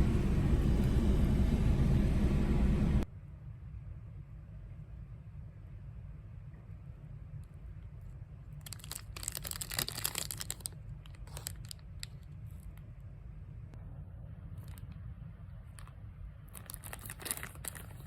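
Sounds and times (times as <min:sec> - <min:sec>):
low rumble: 0:00.0 - 0:03.1
crinkling tearing handling noise: 0:08.6 - 0:12.3, 0:16.5 - 0:18.0.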